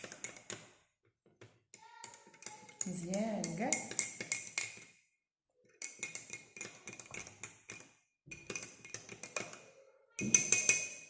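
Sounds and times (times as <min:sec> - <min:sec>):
spoon clinking against glass: 0:02.0 - 0:04.8, 0:05.8 - 0:09.6, 0:10.2 - 0:11.0.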